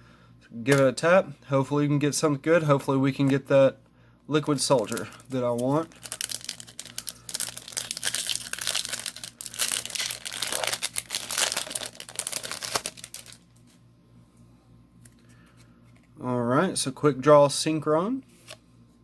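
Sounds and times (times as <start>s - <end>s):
foil wrapper crinkling and tearing: 4.6s - 13.4s.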